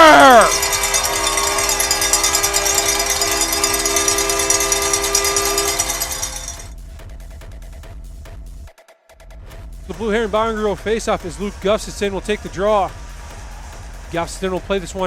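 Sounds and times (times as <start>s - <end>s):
cowbells rattling: 0.0s - 6.7s
goal horn blowing: 0.0s - 6.7s.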